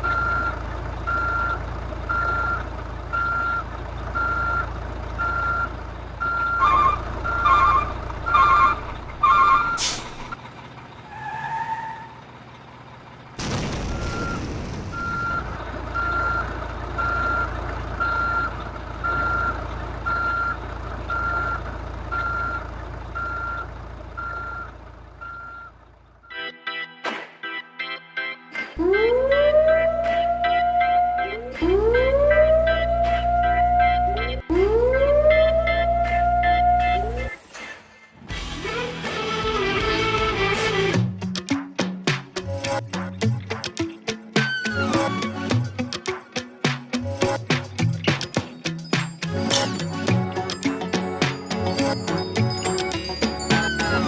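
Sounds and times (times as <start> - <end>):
two-tone beeps: 0.0 - 3.6, 4.2 - 8.8, 14.0 - 22.6, 24.2 - 25.8
reverse warning beeps: 0.0 - 10.4, 14.0 - 25.8
low engine hum: 0.0 - 26.1.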